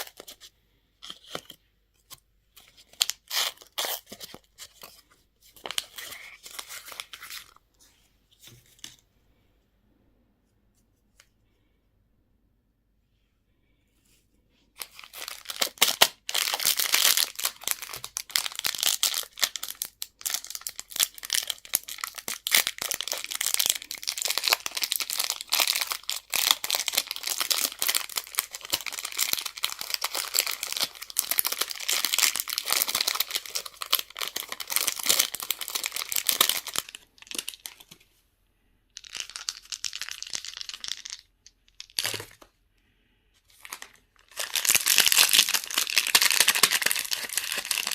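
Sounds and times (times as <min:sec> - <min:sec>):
candy wrapper crinkling: 0:00.0 - 0:01.6, 0:02.6 - 0:05.0, 0:05.6 - 0:07.6, 0:14.8 - 0:38.0, 0:39.0 - 0:42.5, 0:43.5 - 0:47.9.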